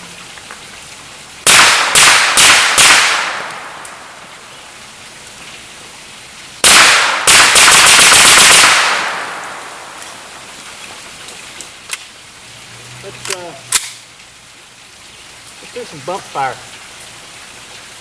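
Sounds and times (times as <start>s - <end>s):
rifle shots fired rapidly: 1.5s - 3.5s, 6.6s - 9.6s.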